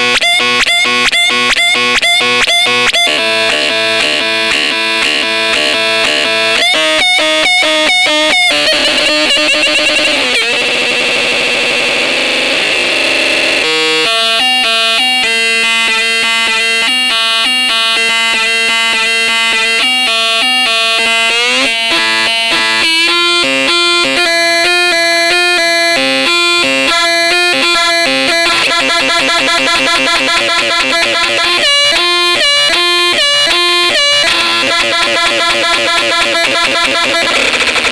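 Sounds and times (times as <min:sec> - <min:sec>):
buzzy synthesizer melody: 0:00.0 - 0:37.9
upward pitch sweep: 0:00.2 - 0:13.6.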